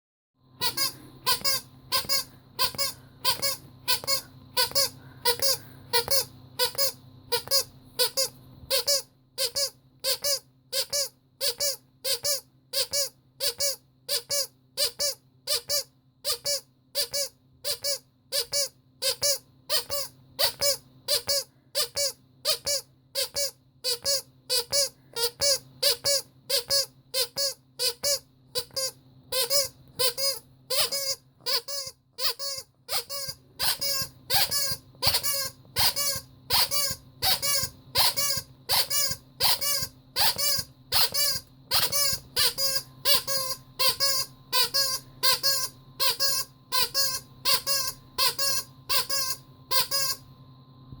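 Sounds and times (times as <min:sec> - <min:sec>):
rubber squeaky toy squeaking: 0:00.6 - 0:50.3.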